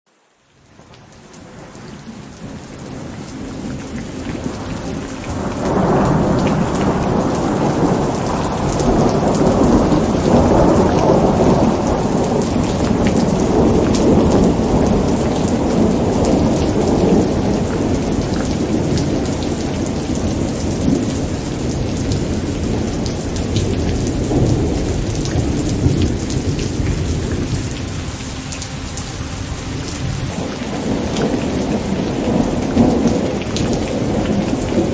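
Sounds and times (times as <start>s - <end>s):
rain pattering: 0.1s - 34.9s
rolling thunder rumble: 1.4s - 34.9s.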